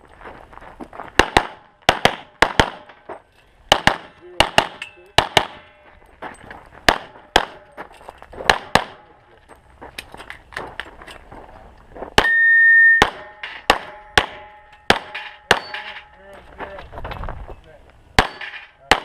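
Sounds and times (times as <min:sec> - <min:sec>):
handgun shots: 0:03.7 - 0:05.7, 0:06.9 - 0:07.7, 0:08.5 - 0:09.0, 0:13.0 - 0:15.9
electronic beep: 0:12.2 - 0:13.1
steel plates clanging: 0:12.2 - 0:16.4, 0:18.2 - 0:18.8.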